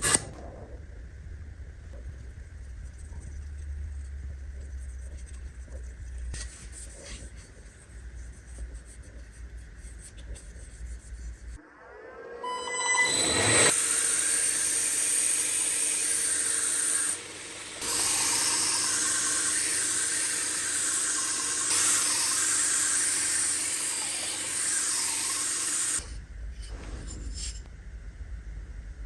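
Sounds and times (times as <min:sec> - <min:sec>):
power tool grinding steel: 0:12.4 - 0:26.0.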